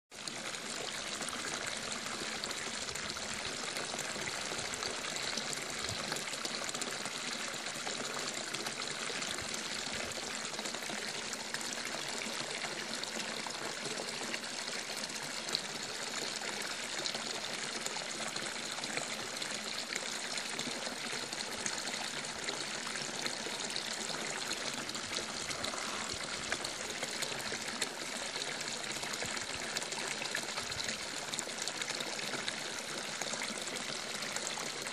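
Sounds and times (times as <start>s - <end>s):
water running: 24.8s - 26.8s.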